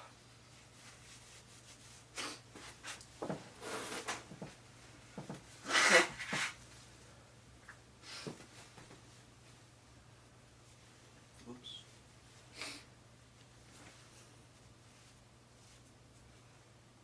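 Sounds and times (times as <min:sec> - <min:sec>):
person sniffing: 0:02.1 - 0:02.5, 0:12.5 - 0:12.9.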